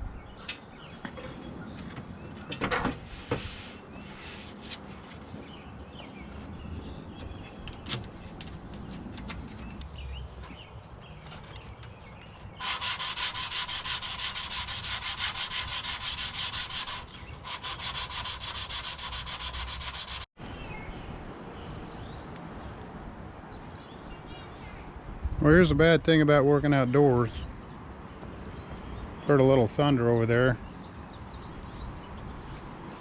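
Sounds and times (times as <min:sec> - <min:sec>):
hand sanding strokes: 0:03.1 - 0:05.1, 0:12.6 - 0:20.3.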